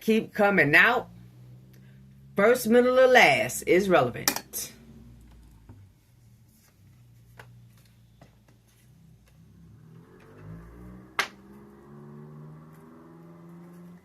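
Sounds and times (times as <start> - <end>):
low hum: 0.6 - 8.2.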